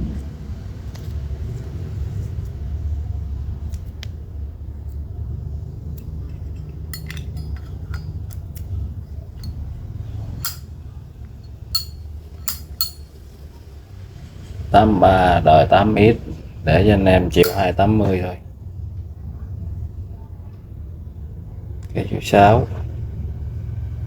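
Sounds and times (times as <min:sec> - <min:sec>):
steady low rumble: 0:00.0 - 0:13.6, 0:14.2 - 0:24.0
metal lighter clicks and clinks: 0:10.4 - 0:10.7, 0:11.8 - 0:13.1, 0:17.4 - 0:17.6.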